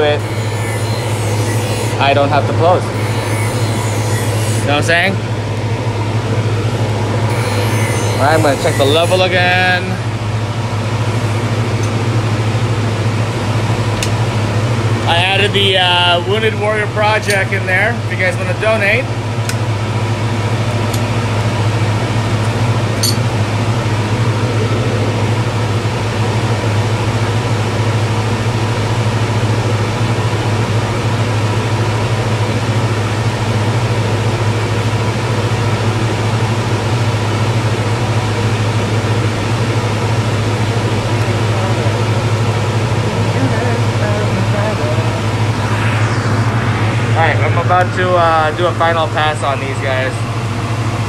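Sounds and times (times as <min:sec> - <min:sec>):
sharpening machine grinding wheel whirring: 0:00.0 - 0:05.2, 0:06.7 - 0:10.0.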